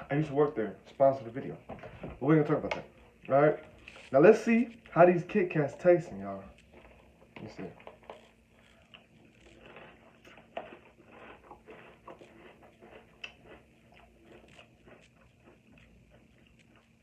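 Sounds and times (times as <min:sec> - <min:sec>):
person chewing crunchy cereal: 0:06.1 - 0:17.0.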